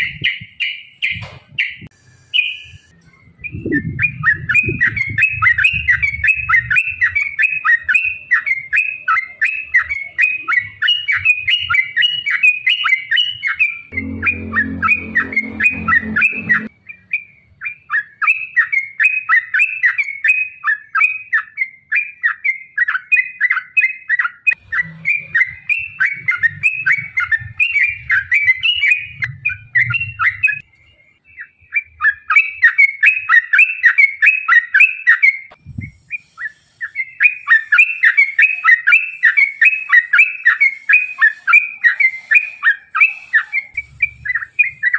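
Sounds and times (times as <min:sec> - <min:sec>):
bulbuls singing chattering notes: 0:00.0 - 0:35.5
low rumble: 0:13.9 - 0:16.7.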